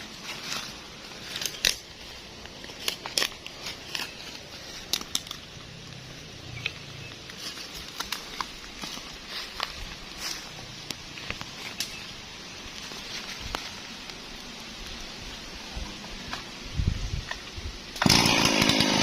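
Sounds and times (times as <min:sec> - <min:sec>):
sharp crackles and clicks: 0:00.0 - 0:15.1
faint steady background noise: 0:00.0 - 0:18.8.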